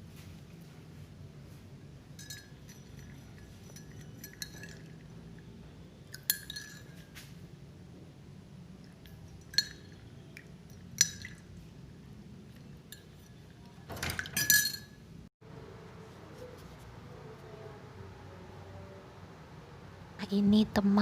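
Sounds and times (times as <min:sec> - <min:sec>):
spoon clinking against glass: 0:02.2 - 0:05.2, 0:06.0 - 0:07.2, 0:09.0 - 0:11.4, 0:12.9 - 0:15.0.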